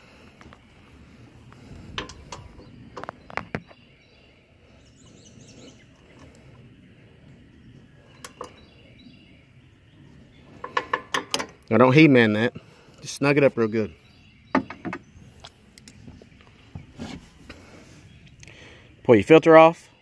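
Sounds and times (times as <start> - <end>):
bird chirping faintly: 0.1 - 11.0.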